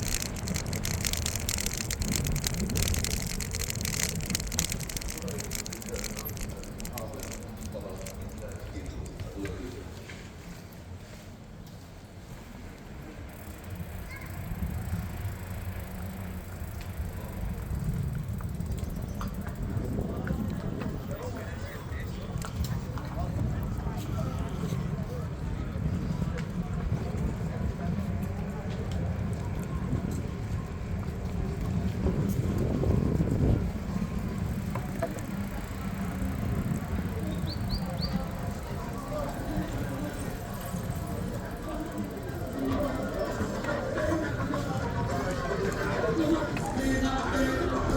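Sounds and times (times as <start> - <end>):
wind buffeting microphone: 0.0 - 9.1, 17.0 - 42.0.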